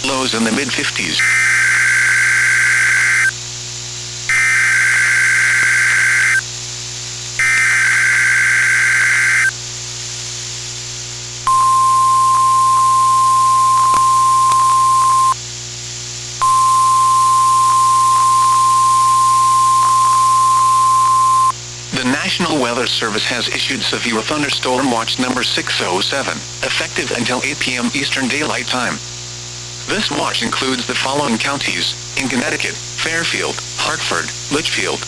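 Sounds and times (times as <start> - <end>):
screechy digital data bursts: 0.3 - 3.4, 4.3 - 6.4, 7.4 - 9.6, 11.5 - 15.4, 16.4 - 21.6
high-pitched warning alarm tone: 1.2 - 3.3, 4.3 - 6.4, 7.4 - 9.5, 11.5 - 15.4, 16.4 - 21.5.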